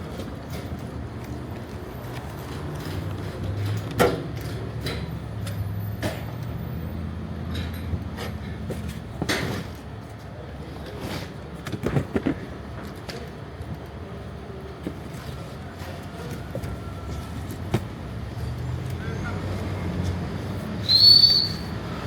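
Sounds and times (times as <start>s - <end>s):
vehicle engine hum: 12.1s - 22.0s.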